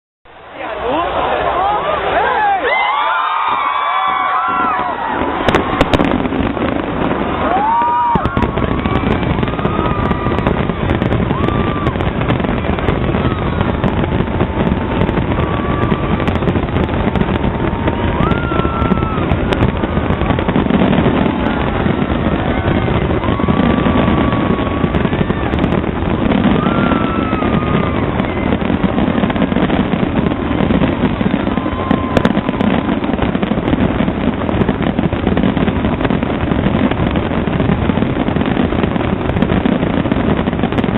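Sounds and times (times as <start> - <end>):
fireworks bursts and crackling: 0.4 - 40.9
whistling fireworks: 0.6 - 40.9.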